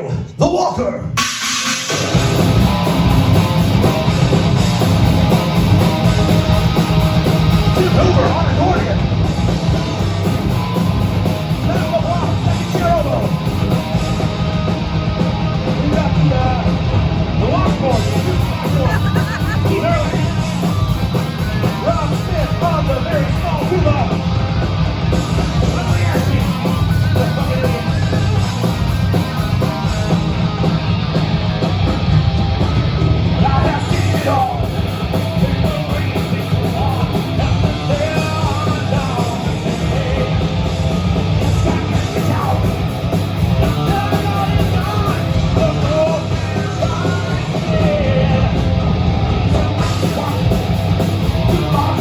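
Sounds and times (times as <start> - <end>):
live rock band with accordion: 1.2 - 52.0.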